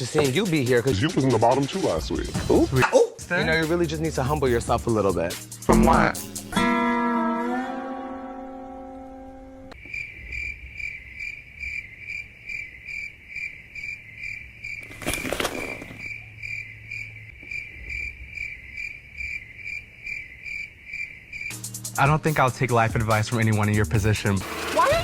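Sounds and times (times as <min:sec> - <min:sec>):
slide guitar sting: 0:05.8 - 0:09.8
crickets chirping: 0:09.8 - 0:21.9.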